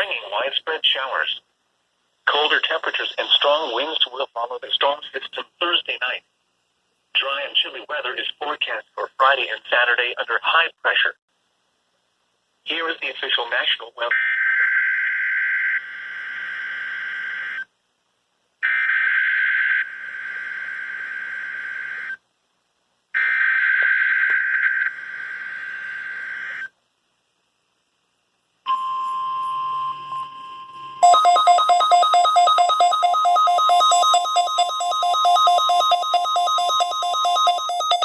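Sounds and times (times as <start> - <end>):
pulsing electronic alarm: 18.6 - 22.2, 23.2 - 26.7, 28.7 - 38.0
steady electronic tone: 28.7 - 38.0.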